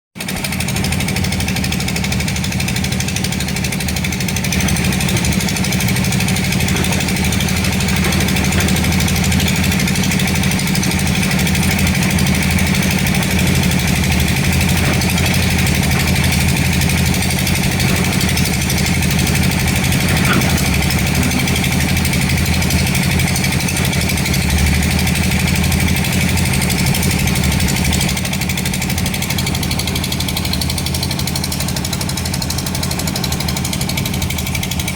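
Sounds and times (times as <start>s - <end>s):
jackhammer hammering: 0.2s - 34.9s
steady low drone: 7.2s - 25.2s.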